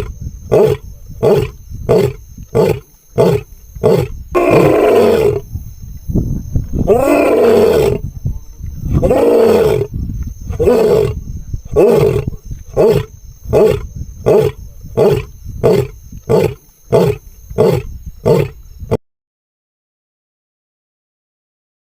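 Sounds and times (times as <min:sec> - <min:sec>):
lion grunting roars: 0:00.0 - 0:05.5, 0:06.8 - 0:08.0, 0:08.9 - 0:09.9, 0:10.5 - 0:18.6
lion roaring: 0:00.0 - 0:05.5, 0:06.8 - 0:08.0, 0:08.9 - 0:09.9, 0:10.5 - 0:18.6.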